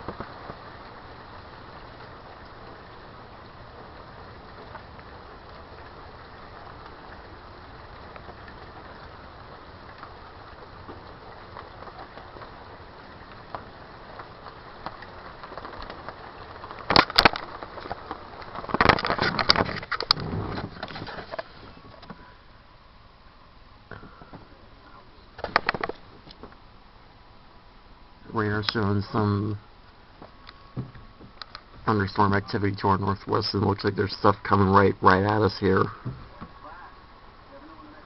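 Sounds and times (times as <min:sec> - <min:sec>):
rain falling: 0:00.0 - 0:38.0.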